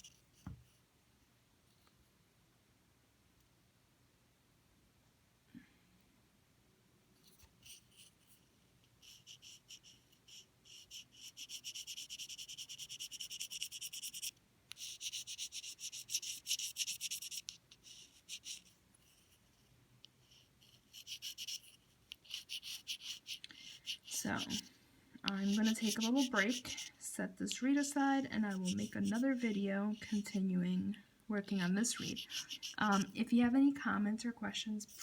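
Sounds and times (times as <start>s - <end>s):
knife scraping reed cane: 25.3s - 27.6s, 28.5s - 30.3s, 31.8s - 33.1s.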